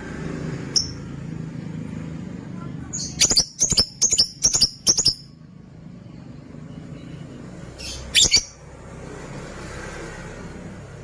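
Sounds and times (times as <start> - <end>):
lovebirds chirping: 0.6 - 1.2, 2.9 - 5.4, 7.7 - 8.6.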